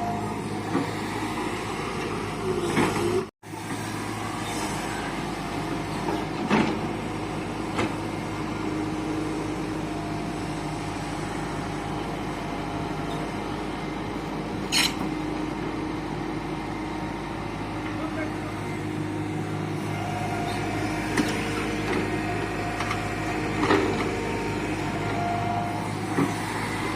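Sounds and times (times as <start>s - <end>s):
excavator diesel engine running: 0.0s - 26.9s.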